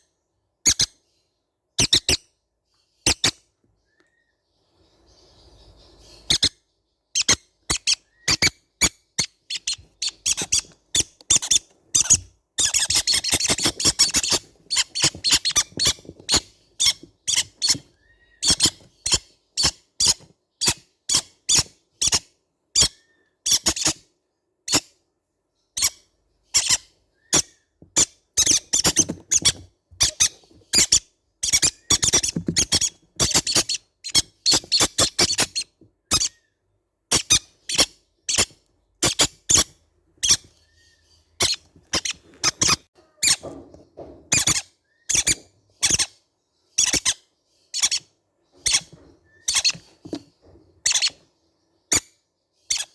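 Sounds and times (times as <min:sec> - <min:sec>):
rapid parrot chattering: 0:00.6 - 0:00.9, 0:03.1 - 0:03.4, 0:06.0 - 0:06.6, 0:07.2 - 0:24.0, 0:25.8 - 0:36.4, 0:37.1 - 0:40.6, 0:41.4 - 0:43.6, 0:44.3 - 0:46.2, 0:46.8 - 0:51.2, 0:51.9 - 0:52.9
parrot chicks squeaking: 0:00.6 - 0:01.0, 0:01.8 - 0:02.3, 0:03.0 - 0:03.4, 0:05.1 - 0:24.1, 0:24.7 - 0:24.9, 0:25.7 - 0:52.9.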